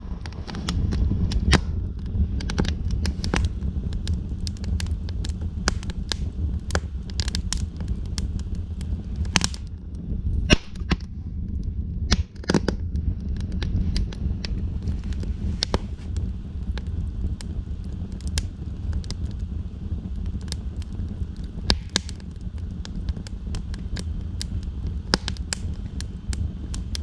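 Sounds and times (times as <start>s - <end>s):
fire crackling and popping: 0.0s - 27.0s
low rumble: 0.0s - 27.0s.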